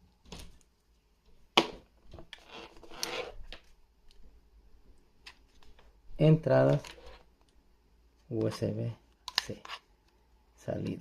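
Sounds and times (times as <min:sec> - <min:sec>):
cable and battery handling rustle: 0:06.6 - 0:07.6.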